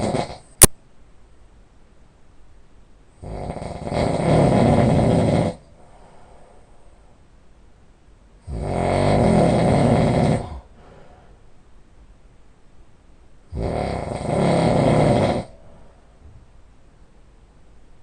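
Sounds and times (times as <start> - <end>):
man snoring loudly: 0.0 - 0.4, 3.2 - 5.7, 8.4 - 10.7, 13.5 - 15.6.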